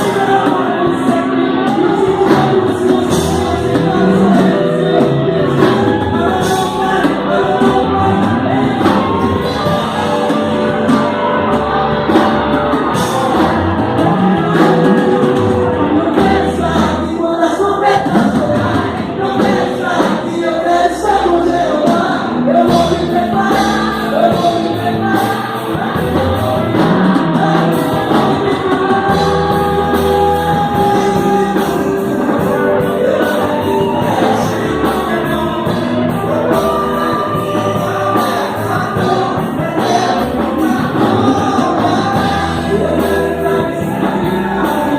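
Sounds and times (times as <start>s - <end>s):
band playing gospel song: 0.0s - 44.9s
voices singing held notes: 0.0s - 44.9s.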